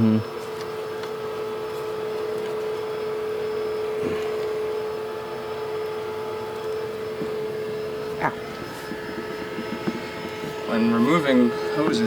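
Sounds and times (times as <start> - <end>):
machine hum with whine: 0.0 - 12.0.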